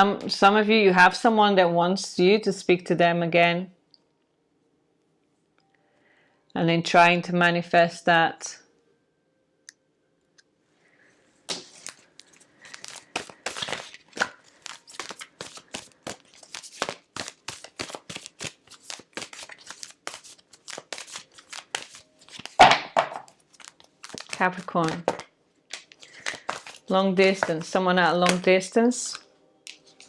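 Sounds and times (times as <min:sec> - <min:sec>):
cards being shuffled: 0:11.5 - 0:30.0.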